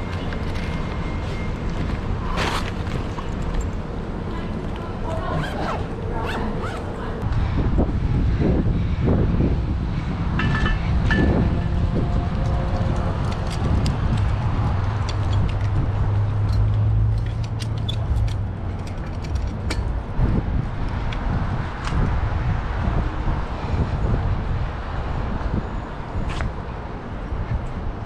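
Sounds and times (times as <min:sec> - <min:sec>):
vehicle low hum: 0:00.0 - 0:26.2
sharp clicks and creaks: 0:12.3 - 0:20.0.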